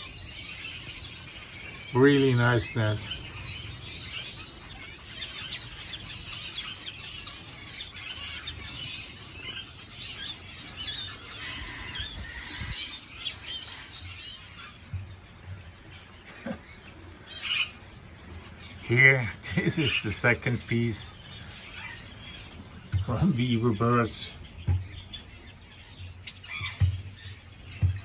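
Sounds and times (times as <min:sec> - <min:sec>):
birds chattering: 0:00.0 - 0:28.0.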